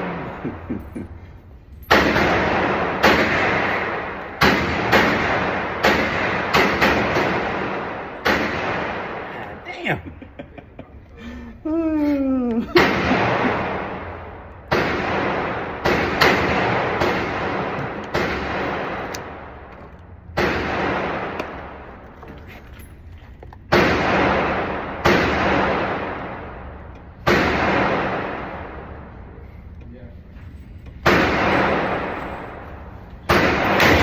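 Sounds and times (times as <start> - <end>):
gunshots echoing: 0.0 - 1.2, 1.8 - 9.7, 12.8 - 22.0, 23.7 - 29.3, 31.0 - 34.0.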